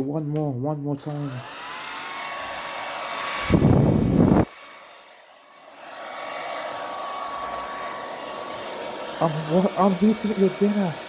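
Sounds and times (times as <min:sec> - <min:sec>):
hair dryer running: 0:01.0 - 0:11.0
air blast hitting microphone: 0:03.4 - 0:04.5.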